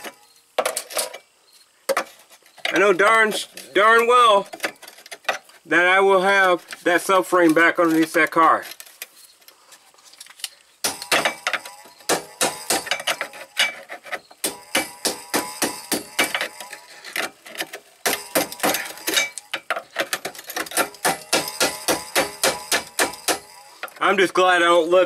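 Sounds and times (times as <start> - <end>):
hand tools clicking on metal: 10.4 - 24.2.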